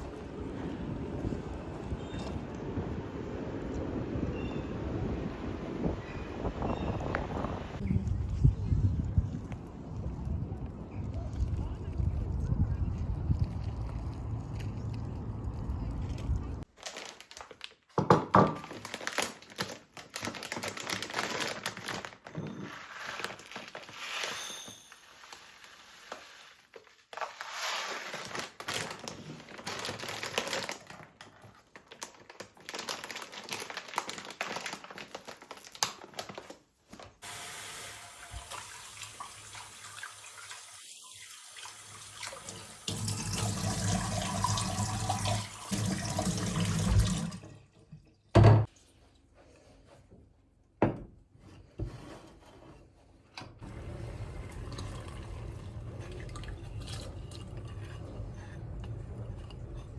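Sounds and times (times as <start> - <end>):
tap water running into sink: 37.3 - 47.5, 53.7 - 57.5.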